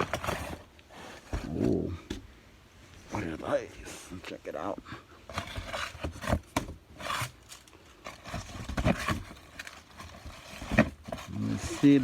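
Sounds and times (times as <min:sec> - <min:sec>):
box scraping and rubbing: 0:00.0 - 0:01.8, 0:05.3 - 0:12.0.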